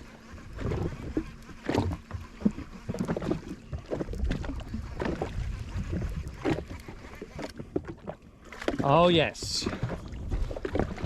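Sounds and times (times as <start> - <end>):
water slapping against a hull: 0.0 - 11.0
wind buffeting the microphone: 4.1 - 6.8.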